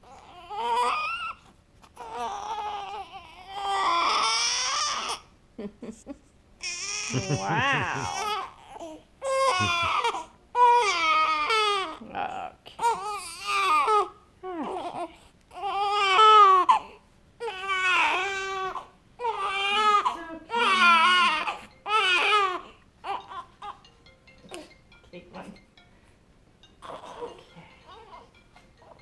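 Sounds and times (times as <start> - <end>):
infant crying: 0.0 - 5.3, 6.6 - 12.1, 12.8 - 23.9, 26.8 - 28.3.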